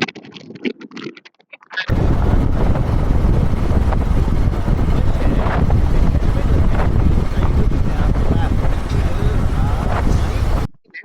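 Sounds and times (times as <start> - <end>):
wind buffeting microphone: 1.9 - 10.7.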